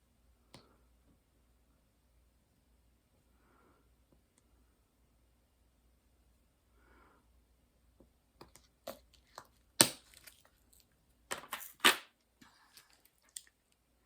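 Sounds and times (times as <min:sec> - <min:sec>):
small clicks and crinkling rustles: 0:08.4 - 0:14.0.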